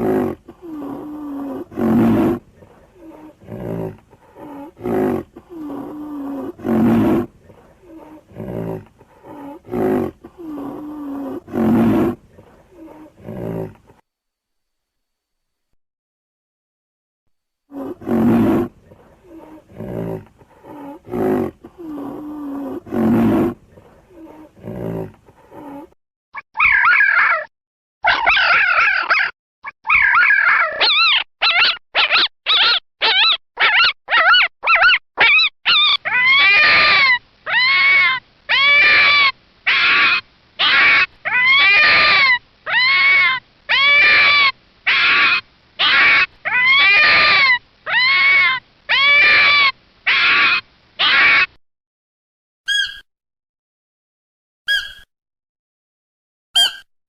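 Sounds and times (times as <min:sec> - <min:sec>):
animal yelping calls: 0:00.0 - 0:13.7, 0:26.6 - 0:29.3, 0:29.9 - 0:51.6, 0:52.7 - 0:53.0, 0:54.7 - 0:55.1, 0:56.6 - 0:56.8
repeated pitched animal calls: 0:00.0 - 0:13.9, 0:17.7 - 0:26.0, 0:29.9 - 0:51.6, 0:52.7 - 0:53.0, 0:54.7 - 0:55.1, 0:56.6 - 0:56.9
animal growls: 0:00.0 - 0:14.0, 0:17.7 - 0:26.0.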